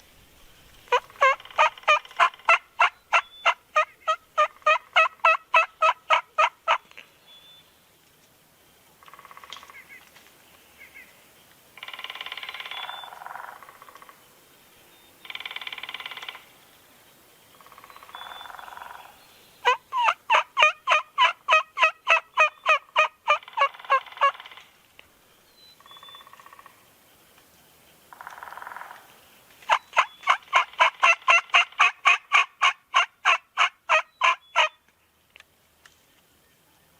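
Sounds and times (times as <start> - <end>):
turkey gobbling: 0.9 - 6.8, 17.6 - 24.7, 28.1 - 29.0, 29.6 - 34.8
turkey yelps: 0.9 - 6.8, 19.6 - 24.6, 29.7 - 34.8.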